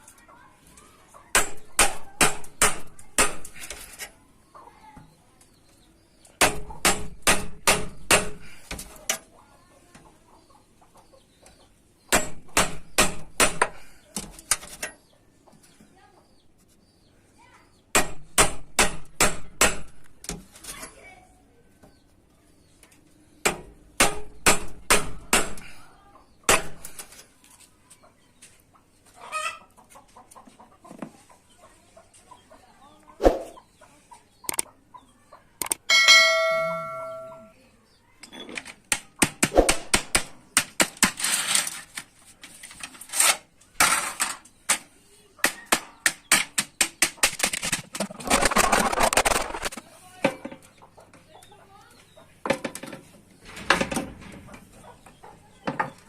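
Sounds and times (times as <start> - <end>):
ringing metallic tone: 35.9 - 37.6.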